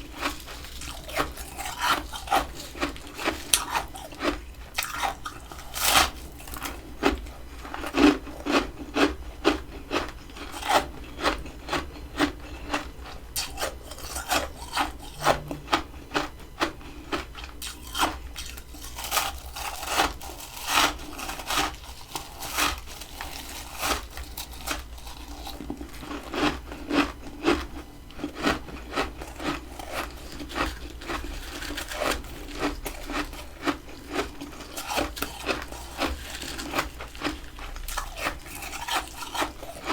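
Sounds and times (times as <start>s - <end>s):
freezer frost being scraped: 0.0s - 9.0s, 17.6s - 27.2s, 28.3s - 39.9s.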